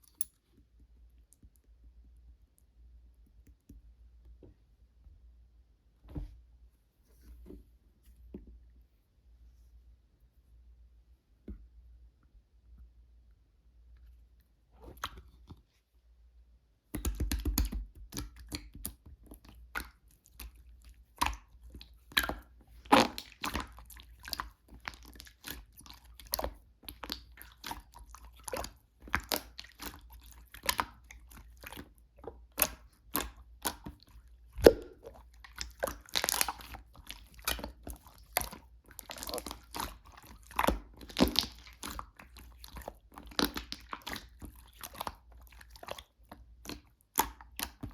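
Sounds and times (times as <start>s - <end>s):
slime squishing with crackling pops: 17.0s - 47.9s.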